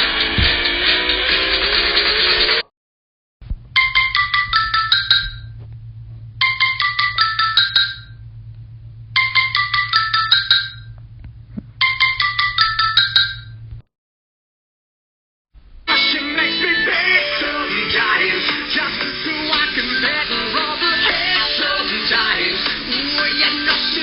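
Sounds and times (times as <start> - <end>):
steady low hum: 3.4 - 13.8, 15.6 - 15.9
marimba phone ringtone: 3.8 - 5.6, 6.4 - 8.2, 9.2 - 10.9, 11.8 - 13.6.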